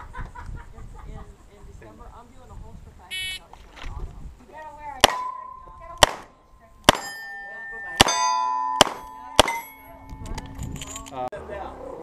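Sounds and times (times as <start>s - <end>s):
steel target plates ringing: 5.1s - 6.0s, 6.7s - 11.1s.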